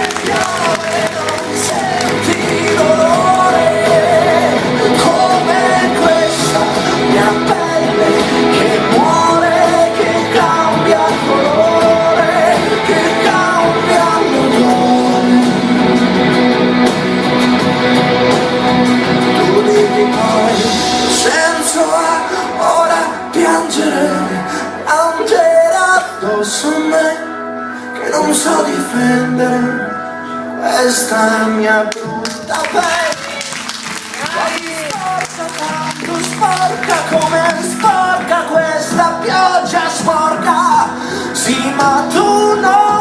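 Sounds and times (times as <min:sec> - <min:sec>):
person singing long bending notes: 0:00.0 - 0:16.4
pop-rock band playing: 0:00.0 - 0:43.0.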